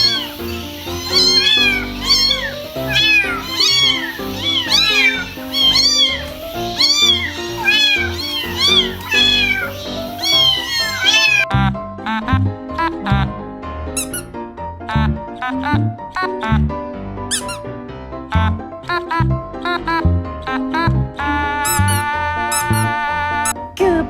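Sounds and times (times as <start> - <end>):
cat meowing: 0.0 - 11.5, 14.0 - 14.3, 17.3 - 17.6, 21.7 - 23.6
background music: 0.0 - 24.0.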